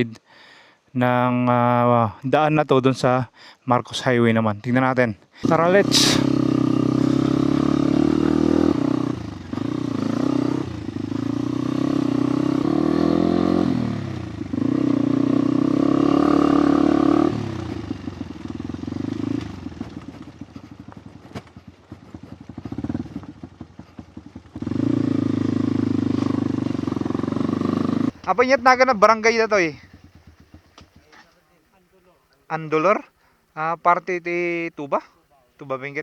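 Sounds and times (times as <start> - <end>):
motorcycle engine running: 5.4 - 31.6.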